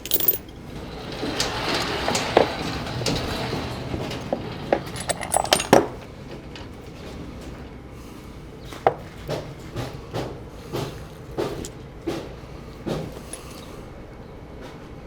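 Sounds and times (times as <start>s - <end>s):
metallic clanks and clinks: 0.0s - 0.6s, 4.7s - 6.1s.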